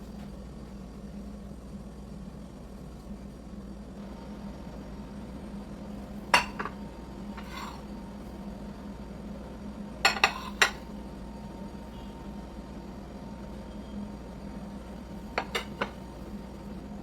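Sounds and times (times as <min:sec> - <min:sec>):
steady low hum: 0:00.0 - 0:17.0
dishes clinking: 0:06.3 - 0:07.8, 0:10.0 - 0:10.9, 0:15.4 - 0:16.1.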